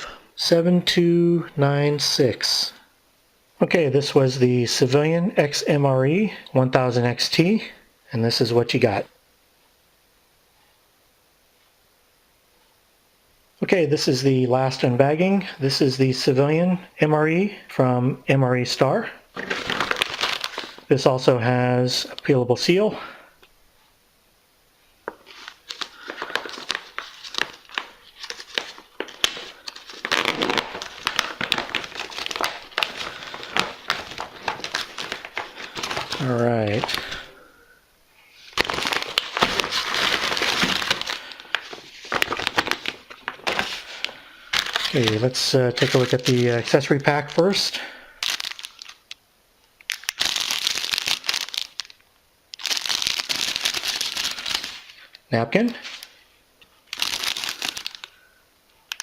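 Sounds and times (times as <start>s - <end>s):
plastic bag crinkling: 19.3s - 21.0s, 25.1s - 37.5s, 38.4s - 49.2s, 49.8s - 52.0s, 52.6s - 56.2s, 56.8s - 58.3s.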